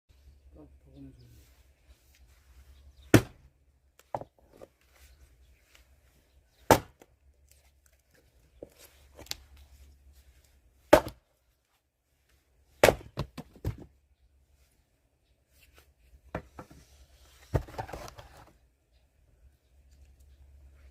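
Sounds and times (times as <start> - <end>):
axe chopping wood: 3.1 - 4.2, 6.6 - 7.1, 10.9 - 11.3, 12.8 - 13.9.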